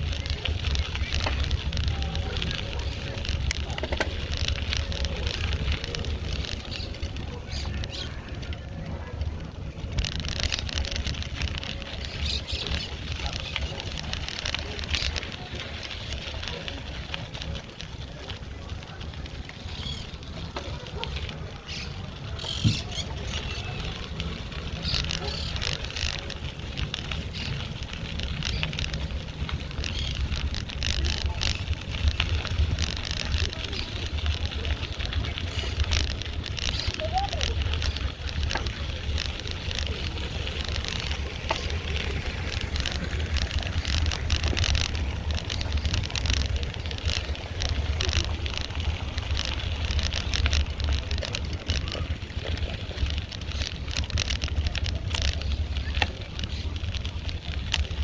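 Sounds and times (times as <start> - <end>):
bicycle clicks and rattles: 0.0 - 58.0
wind rumbling on microphone: 0.0 - 58.0.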